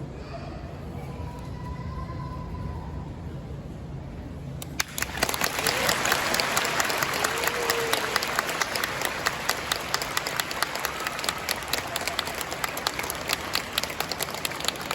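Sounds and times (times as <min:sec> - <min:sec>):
audience applauding: 0:04.7 - 0:14.9.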